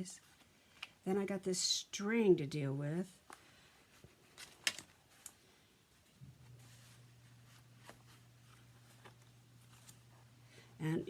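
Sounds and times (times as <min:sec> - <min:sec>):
low steady hum: 0:00.0 - 0:11.0
paper and string handling: 0:03.3 - 0:05.4, 0:06.0 - 0:10.7.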